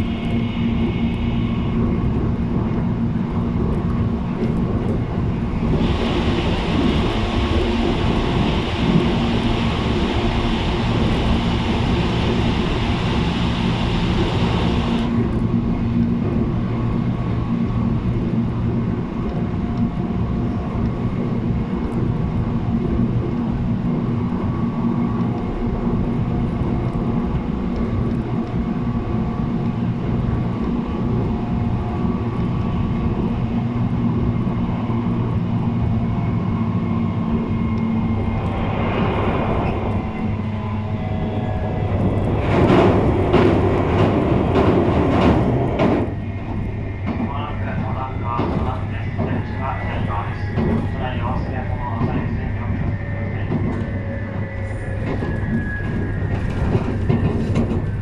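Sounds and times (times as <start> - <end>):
electric train motor hum: 0.0 - 16.5
rail and wheel rumble: 0.0 - 58.0.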